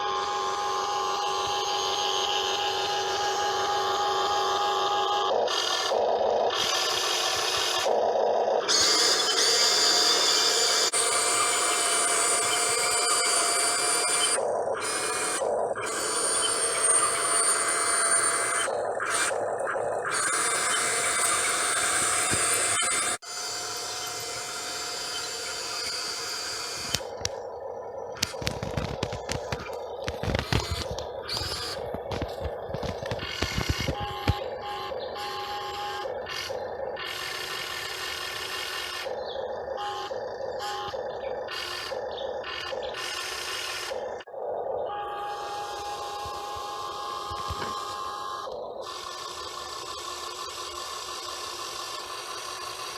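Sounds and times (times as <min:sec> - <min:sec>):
electric motors whirring: 0:00.0 - 0:52.9
sharp clicks: 0:05.4 - 0:08.0, 0:08.7 - 0:23.2, 0:24.0 - 0:27.4, 0:28.2 - 0:34.5.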